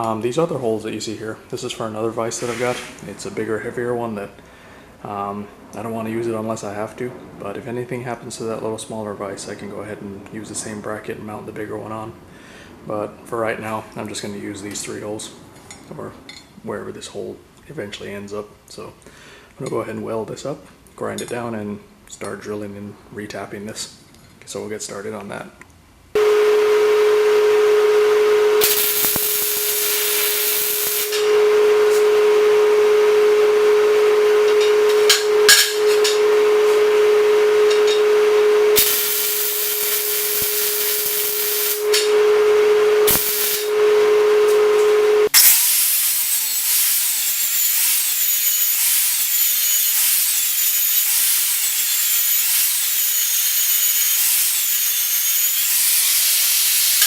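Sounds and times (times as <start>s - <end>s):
steady hiss with wavering pitch: 28.4s - 32.2s, 34.0s - 57.0s
angle grinder grinding steel: 28.6s - 32.1s, 34.4s - 36.3s, 38.7s - 42.2s, 43.0s - 43.8s, 44.4s - 57.0s.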